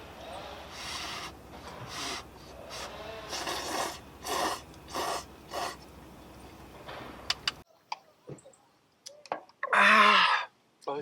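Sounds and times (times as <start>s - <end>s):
person slurping noodles: 1.9s - 5.8s.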